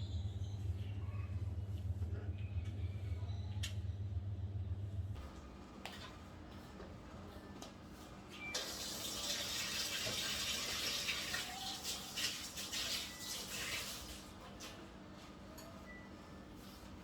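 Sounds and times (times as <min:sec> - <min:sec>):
water running from a tap: 0:08.6 - 0:14.7.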